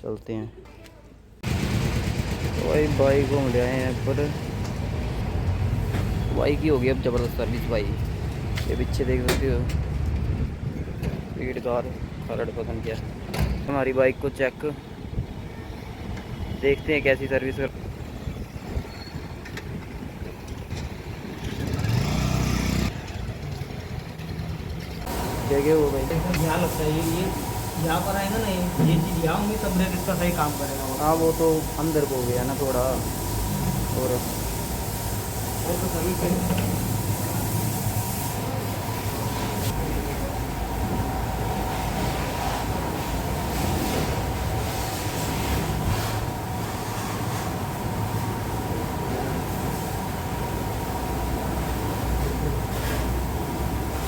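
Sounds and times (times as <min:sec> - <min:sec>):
motorcycle engine rumbling: 0:01.4 - 0:06.4
pressure washer running: 0:25.1 - 0:54.0
water jet hissing: 0:25.1 - 0:54.0.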